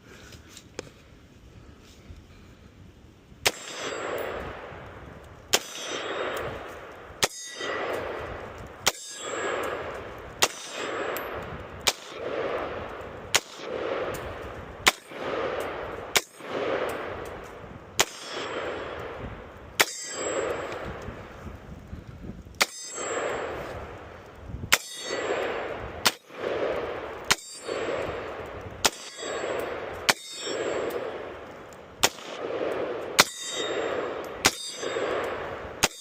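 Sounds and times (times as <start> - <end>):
rifle single shots: 3.4 - 21.0, 24.7 - 36.0.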